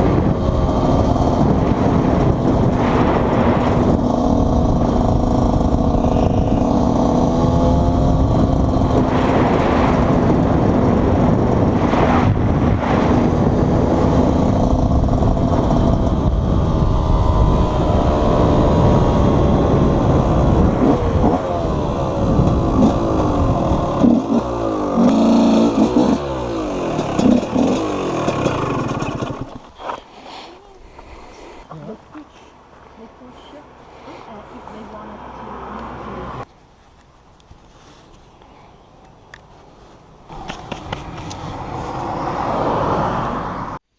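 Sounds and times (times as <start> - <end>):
two-stroke motorcycle engine revving: 0.0 - 29.6.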